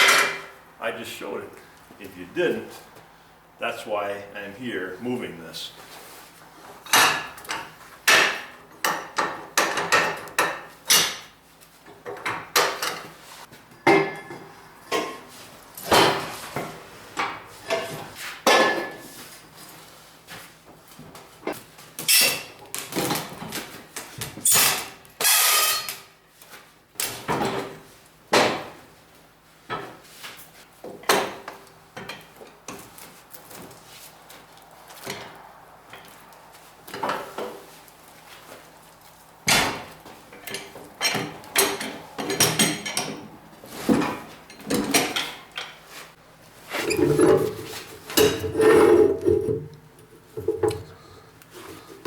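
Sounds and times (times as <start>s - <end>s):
metal and wood knocks and rattles: 6.8s - 11.3s, 13.8s - 19.0s, 39.4s - 45.8s, 46.8s - 51.0s.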